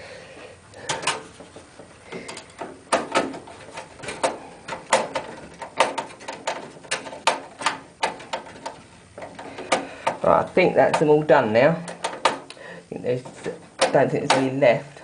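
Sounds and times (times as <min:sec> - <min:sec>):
screwdriver clicks and knocks: 0:00.8 - 0:10.2, 0:11.8 - 0:12.6, 0:13.3 - 0:14.6.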